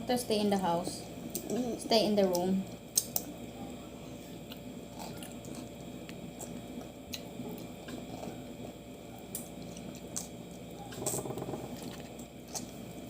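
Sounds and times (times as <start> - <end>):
low room hum: 0.0 - 13.0
chewing and wet mouth sounds: 2.3 - 3.8, 4.4 - 13.0.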